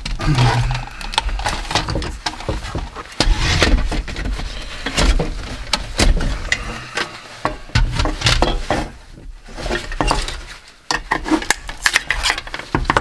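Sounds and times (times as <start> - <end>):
clicks and clatter of tools: 9.7 - 13.0.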